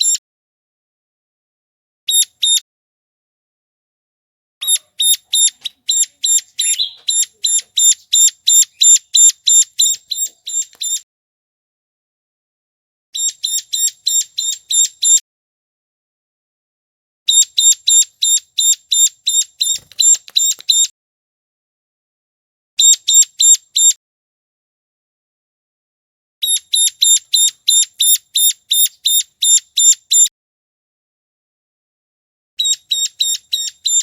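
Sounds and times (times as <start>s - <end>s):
bird calling in rapid chips: 2.1s - 2.6s, 4.6s - 11.0s, 13.2s - 15.2s, 17.3s - 20.9s, 22.8s - 24.0s, 26.4s - 30.3s, 32.6s - 34.0s.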